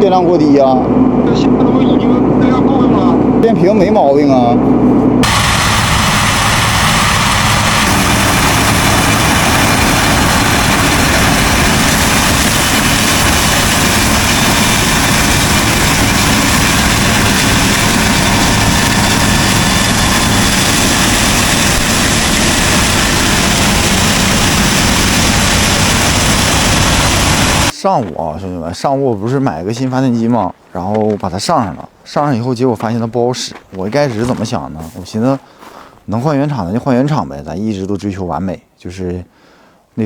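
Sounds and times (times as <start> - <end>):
combine harvester running: 0.0 - 27.8.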